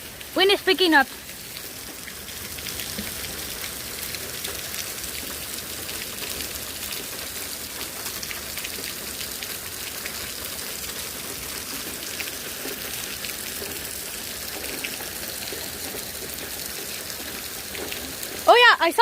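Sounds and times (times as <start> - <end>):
heavy rain falling: 0.0 - 19.0.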